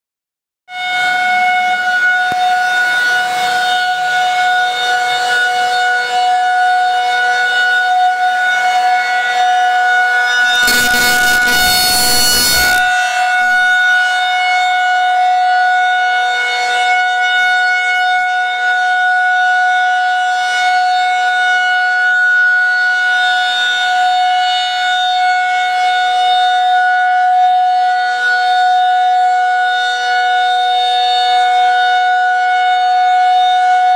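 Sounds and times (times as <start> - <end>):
two-note warning siren: 10.5 - 13.7
rush of noise: 10.6 - 13.7.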